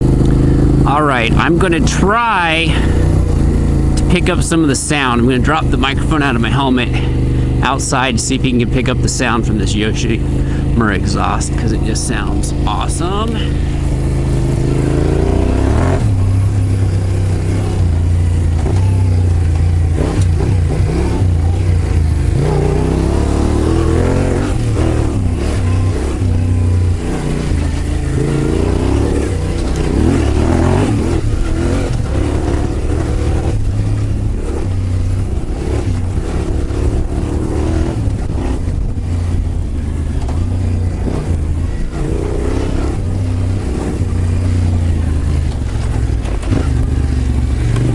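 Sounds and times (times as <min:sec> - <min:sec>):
motorcycle exhaust accelerating: 0:00.0 - 0:47.9.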